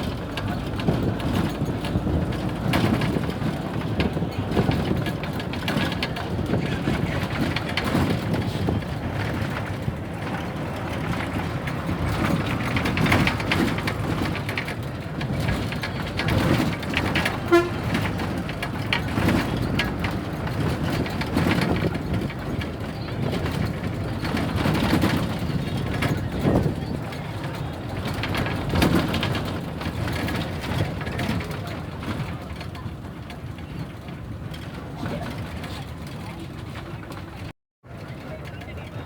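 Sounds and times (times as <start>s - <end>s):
bus engine and road noise: 0.0s - 39.0s
short horn toot: 17.4s - 18.0s.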